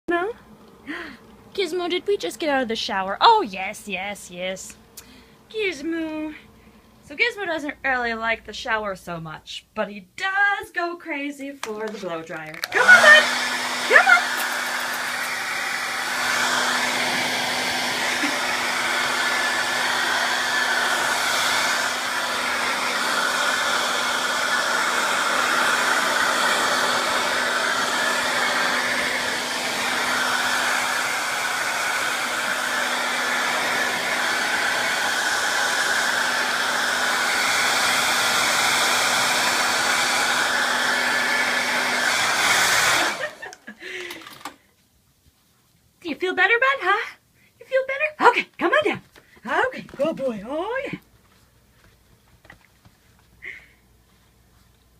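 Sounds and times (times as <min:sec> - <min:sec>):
hair dryer blowing: 0:11.6 - 0:44.6, 0:53.4 - 0:53.8.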